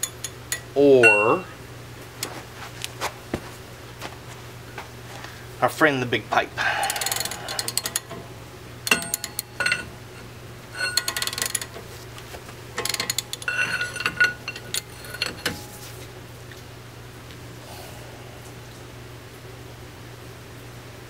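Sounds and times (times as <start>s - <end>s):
metal pipe clanking on bar: 0.0s - 1.5s, 8.9s - 9.9s, 10.8s - 11.8s, 12.8s - 15.6s.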